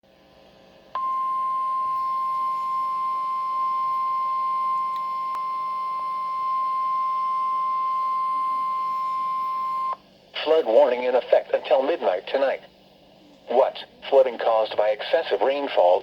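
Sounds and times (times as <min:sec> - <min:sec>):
faint radio hiss: 0:00.1 - 0:16.0
high-pitched warning tone: 0:01.0 - 0:10.0.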